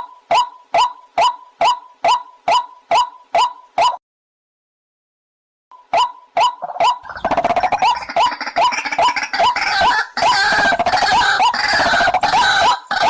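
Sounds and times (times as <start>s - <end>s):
bird repeated rising notes: 0.0s - 4.0s, 5.8s - 13.0s
harsh bird calling: 5.9s - 13.0s.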